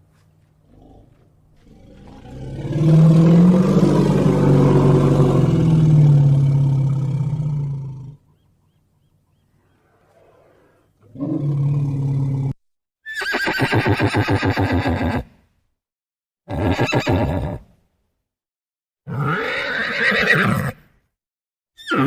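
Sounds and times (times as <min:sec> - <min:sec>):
large animal long low call: 0:00.8 - 0:08.2.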